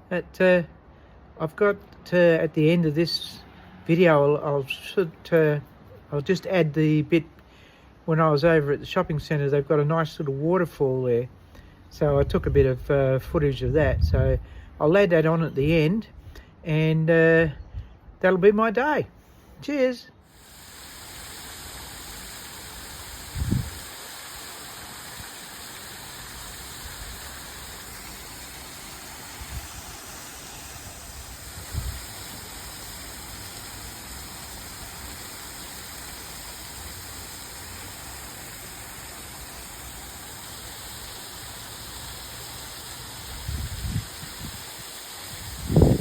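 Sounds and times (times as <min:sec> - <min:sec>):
waterfall rushing: 0:20.3 - 0:46.0.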